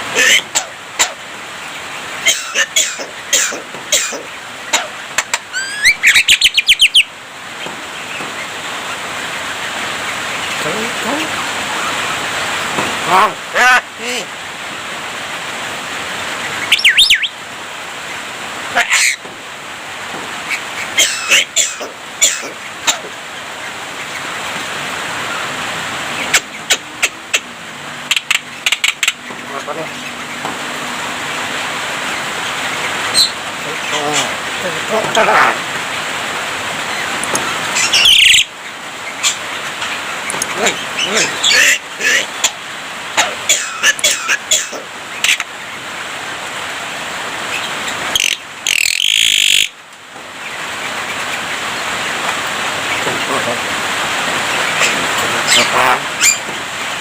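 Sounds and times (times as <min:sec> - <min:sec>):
steady background hiss: 0:00.0 - 0:57.0
bird giving harsh high call: 0:02.2 - 0:07.1, 0:16.6 - 0:17.4, 0:20.9 - 0:23.0, 0:37.8 - 0:38.5, 0:48.2 - 0:49.8
myna bird calls: 0:02.2 - 0:08.5, 0:16.4 - 0:17.4, 0:18.7 - 0:19.3, 0:20.4 - 0:24.4, 0:25.2 - 0:30.5, 0:31.3 - 0:35.7, 0:36.8 - 0:45.5, 0:47.5 - 0:49.8, 0:54.4 - 0:56.6.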